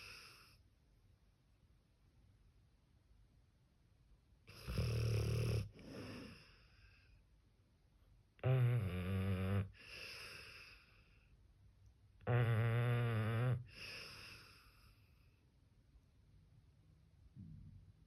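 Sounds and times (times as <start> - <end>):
dog snoring: 4.5 - 6.6, 8.4 - 10.8, 12.2 - 14.8.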